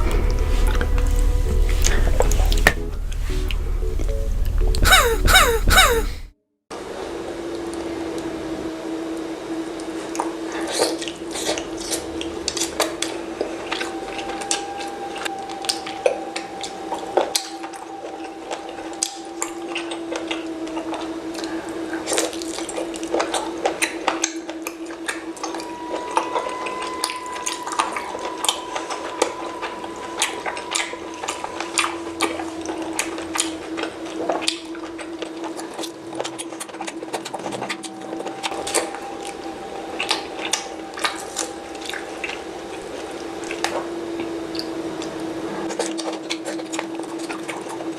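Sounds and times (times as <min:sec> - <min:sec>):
steady low hum: 0:00.0 - 0:06.3.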